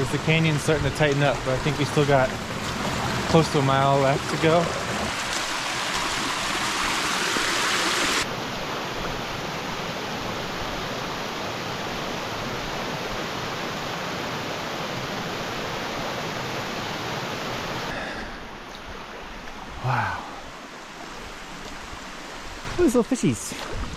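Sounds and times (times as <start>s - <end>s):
creek water rushing: 0.0s - 23.9s.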